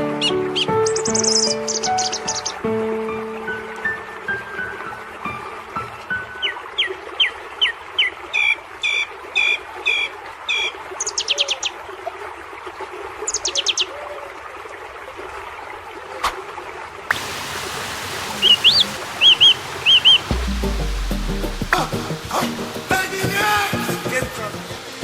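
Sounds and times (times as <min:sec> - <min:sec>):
birds calling: 0:17.1 - 0:23.0
bird trills: 0:17.2 - 0:20.3
rising and falling chirps: 0:17.4 - 0:23.0.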